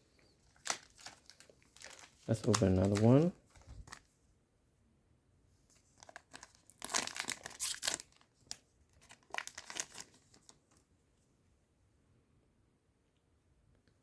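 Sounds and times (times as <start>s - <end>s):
foil pack tearing and crinkling: 0.5s - 4.0s, 6.0s - 10.4s.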